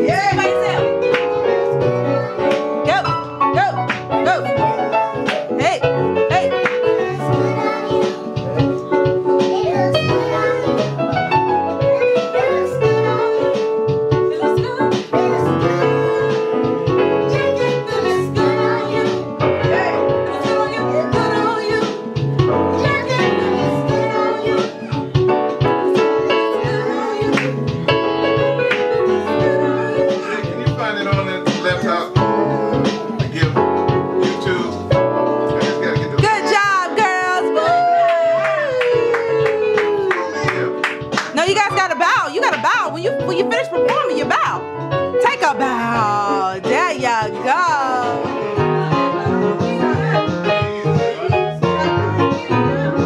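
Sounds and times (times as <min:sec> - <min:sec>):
piano music: 0:00.0 - 0:53.0
girls singing together: 0:07.0 - 0:13.8, 0:14.4 - 0:25.2, 0:25.9 - 0:27.8, 0:28.6 - 0:30.7.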